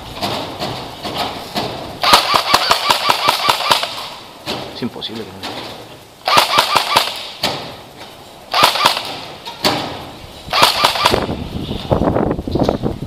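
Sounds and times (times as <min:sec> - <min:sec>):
airsoft guns firing in bursts: 0:01.0 - 0:04.3, 0:06.2 - 0:07.8, 0:08.5 - 0:11.4.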